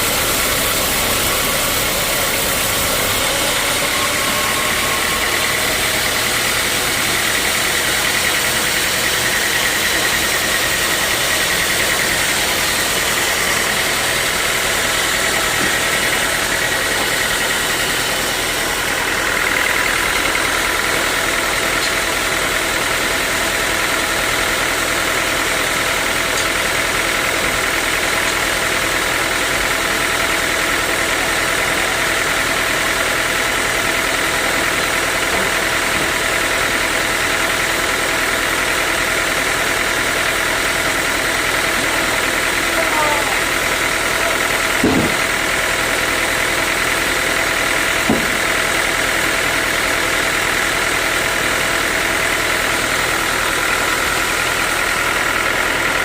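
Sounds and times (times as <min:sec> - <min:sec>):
high mechanical whine: 0:00.0 - 0:30.9
sawmill machinery drone: 0:00.0 - 0:56.0.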